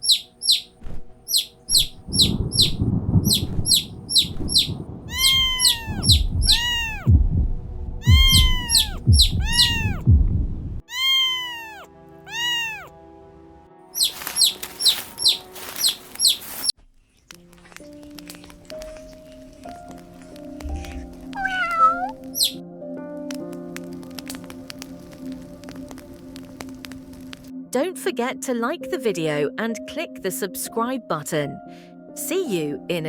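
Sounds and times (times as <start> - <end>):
chick peeping: 0.0 - 0.7, 1.3 - 7.0, 8.1 - 10.0, 14.0 - 16.7, 22.3 - 22.6
soft background music: 0.0 - 33.0
low rushing noise: 1.8 - 10.8
kitten mewing: 3.7 - 7.1, 8.0 - 10.0, 10.8 - 12.9, 17.1 - 22.6.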